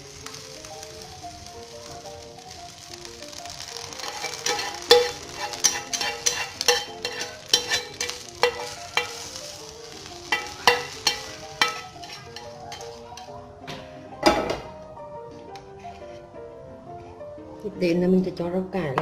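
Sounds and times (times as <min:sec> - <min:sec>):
light sizzle from pan: 0:00.0 - 0:16.2
soft background music: 0:00.0 - 0:19.0
utensil scraping hot pan: 0:02.4 - 0:13.4, 0:15.6 - 0:16.3.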